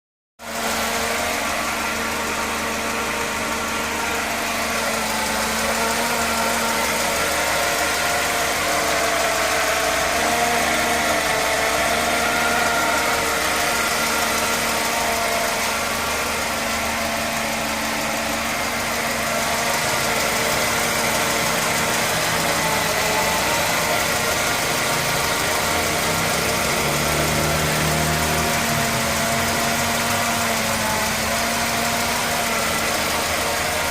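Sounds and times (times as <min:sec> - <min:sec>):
car engine idling: 0:00.4 - 0:33.9
steady whining tones: 0:00.6 - 0:33.9.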